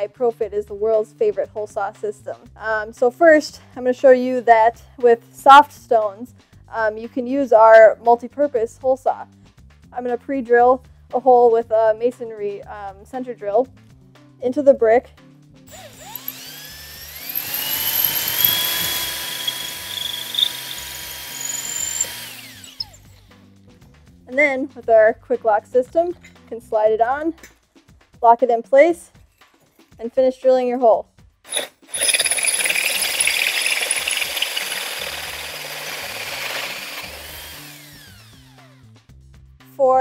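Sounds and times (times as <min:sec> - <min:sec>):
power drill boring into brick: 0:15.7 - 0:23.2, 0:31.5 - 0:38.7.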